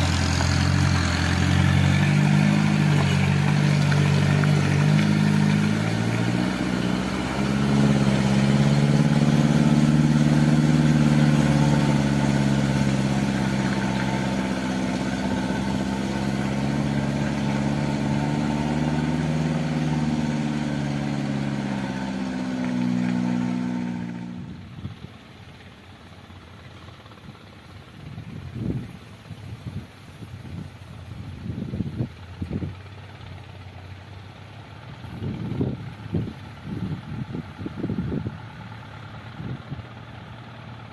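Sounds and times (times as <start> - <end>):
heavy machine engine running: 0.0 - 29.4.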